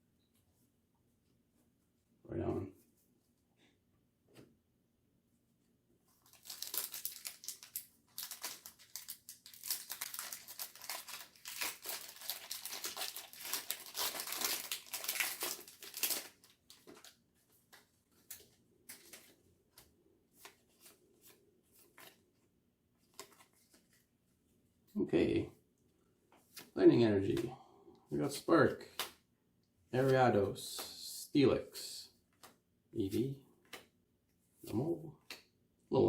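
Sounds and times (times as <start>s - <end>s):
foil wrapper tearing and crinkling: 6.2s - 16.8s.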